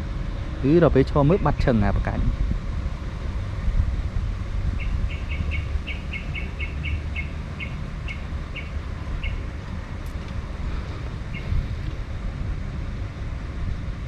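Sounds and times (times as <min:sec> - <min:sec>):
steady low rumble: 0:00.0 - 0:14.0
bird chirping: 0:04.8 - 0:09.5, 0:11.3 - 0:11.7.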